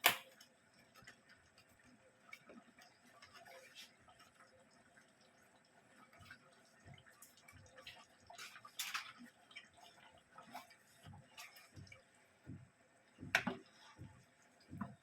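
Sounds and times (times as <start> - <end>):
light clicks and soft knocks: 11.0 - 15.0.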